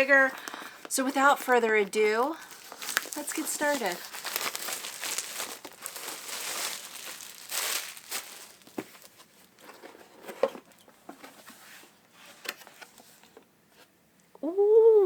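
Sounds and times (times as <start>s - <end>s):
packaging crinkling and rustling: 0.0s - 11.4s.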